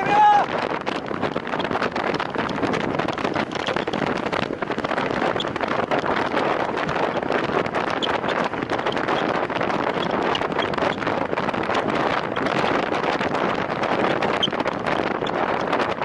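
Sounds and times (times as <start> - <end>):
wind buffeting microphone: 0.0 - 16.0
crackle of small clicks: 0.8 - 6.9.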